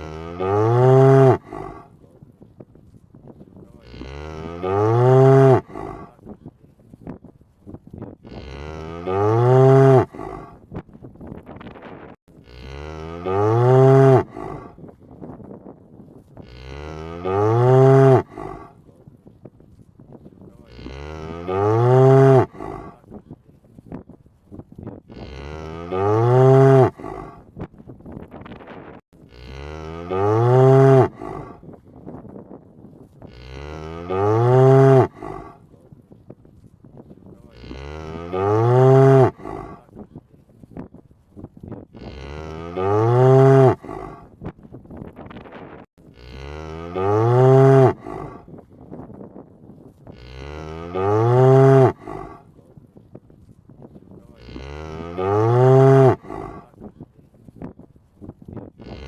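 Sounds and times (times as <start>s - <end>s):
cow mooing: 0.0s - 1.9s, 3.8s - 6.2s, 8.2s - 10.6s, 12.4s - 14.8s, 16.4s - 18.8s, 20.6s - 23.0s, 25.1s - 27.4s, 29.3s - 31.6s, 33.2s - 35.6s, 37.4s - 39.9s, 42.0s - 44.3s, 46.1s - 48.5s, 50.1s - 52.5s, 54.3s - 56.8s, 58.8s - 59.0s.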